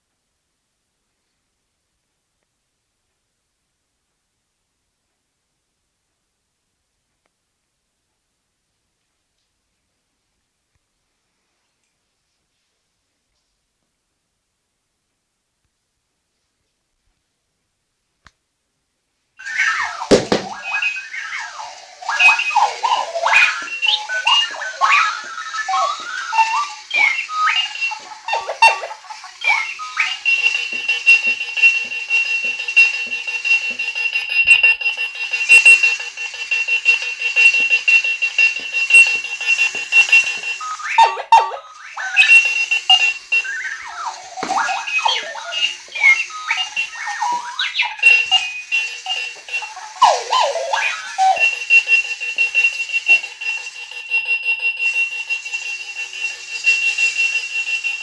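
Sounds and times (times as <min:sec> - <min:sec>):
wavering sliding electronic sounds: 0:19.4 - 0:30.3, 0:38.3 - 0:53.6
shrill pulsing alarm clock tone: 0:19.4 - 0:58.0.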